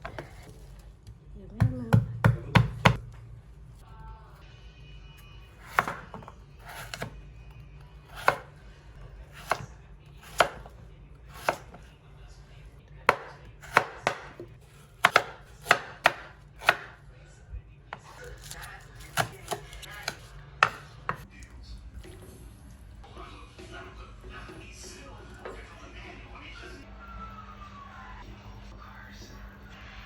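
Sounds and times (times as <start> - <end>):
knife chopping on cutting board: 1.6 - 3.0, 5.6 - 7.1, 8.1 - 8.5, 9.3 - 10.7, 11.3 - 11.8, 13.1 - 17.0, 18.4 - 21.2.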